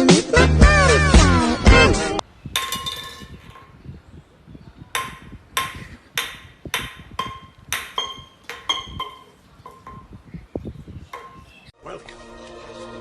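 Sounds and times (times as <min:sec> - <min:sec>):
sharp clinking strikes: 0:05.0 - 0:10.2.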